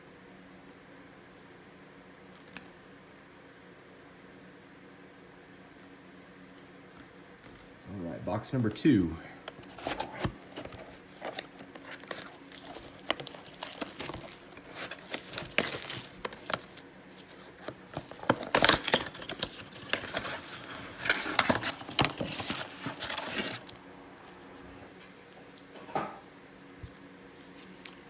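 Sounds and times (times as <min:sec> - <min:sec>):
wrappers crinkling and tearing: 0:09.5 - 0:24.5, 0:26.8 - 0:28.0.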